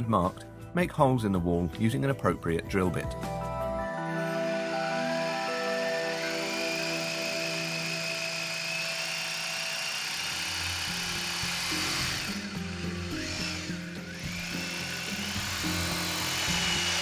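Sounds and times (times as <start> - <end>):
background music: 0.0 - 17.0
electric drill whining: 4.0 - 17.0.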